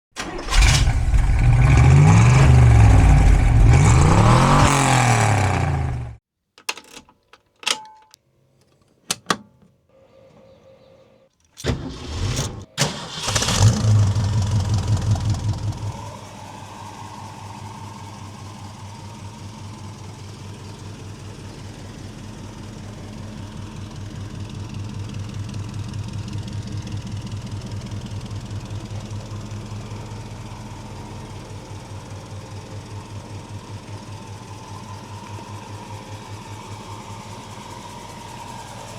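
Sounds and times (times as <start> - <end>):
engine cranking and starting: 0.1 - 6.1, 11.4 - 20.8
car engine revving: 0.4 - 6.2, 12.9 - 38.9
car engine idling: 0.5 - 6.2, 12.9 - 38.9.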